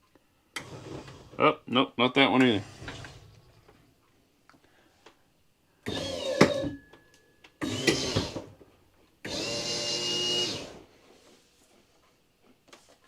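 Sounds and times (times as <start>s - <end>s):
sharp click: 7.6s - 8.1s
electric motor running: 7.6s - 8.2s.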